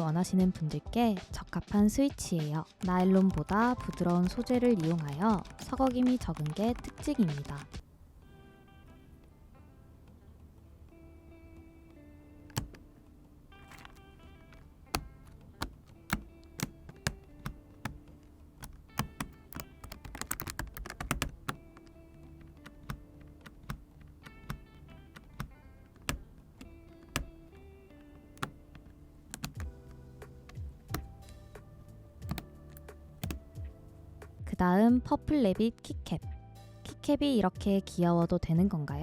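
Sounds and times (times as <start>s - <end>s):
background music: 0.0s - 39.0s
keyboard switches clicking: 2.8s - 7.8s, 11.5s - 33.7s.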